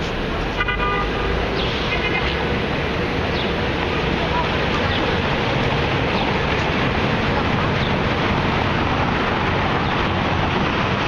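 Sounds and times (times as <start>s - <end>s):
city traffic roar: 0.0s - 11.0s.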